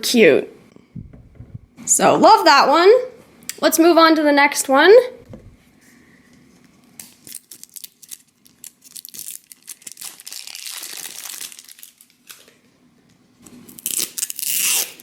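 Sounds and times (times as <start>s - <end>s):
plastic packaging crinkling and tearing: 7.0s - 12.6s, 13.5s - 15.0s.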